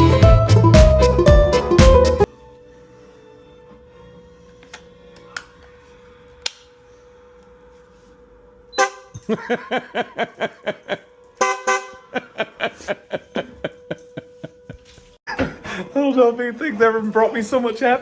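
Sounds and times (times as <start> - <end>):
air horn blasts: 8.7 - 9.2, 11.4 - 12.1.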